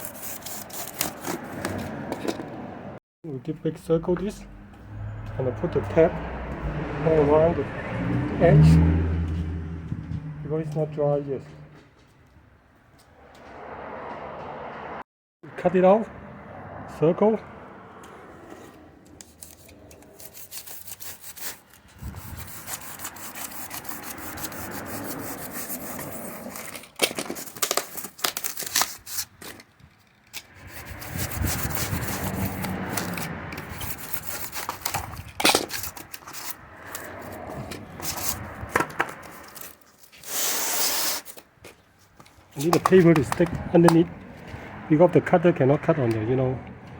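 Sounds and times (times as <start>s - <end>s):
cutter scraping and clicking: 0.0s - 2.6s, 18.0s - 41.5s.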